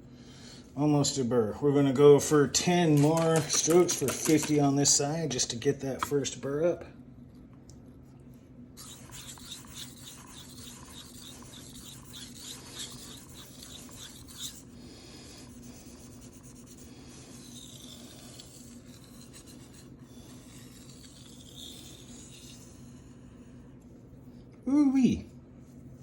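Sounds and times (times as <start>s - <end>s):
knife rasping on whetstone: 8.8s - 14.8s, 15.4s - 23.1s.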